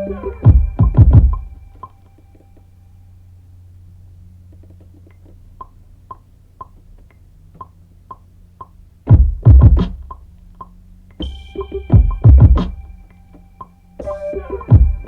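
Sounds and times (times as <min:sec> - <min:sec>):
heavy bass-drum hits: 0:00.0 - 0:01.9, 0:09.1 - 0:10.3, 0:11.2 - 0:13.1, 0:14.0 - 0:15.0
drum machine clicks: 0:00.0 - 0:02.7, 0:04.6 - 0:15.0
held synth tone: 0:00.0 - 0:03.2, 0:11.2 - 0:15.0.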